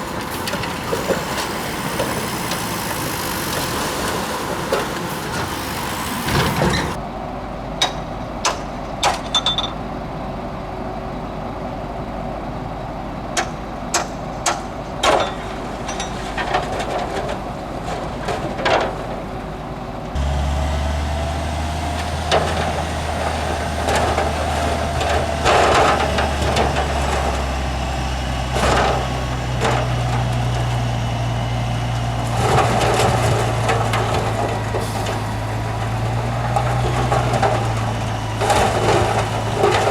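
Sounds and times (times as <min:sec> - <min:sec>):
diesel engine rumble: 0:00.0 - 0:39.9.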